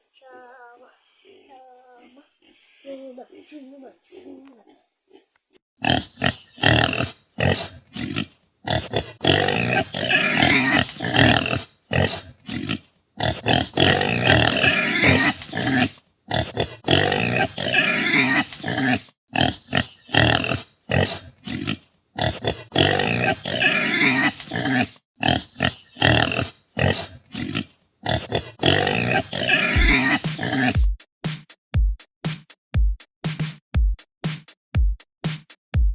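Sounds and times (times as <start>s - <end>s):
pigs calling loudly: 5.8s - 30.8s.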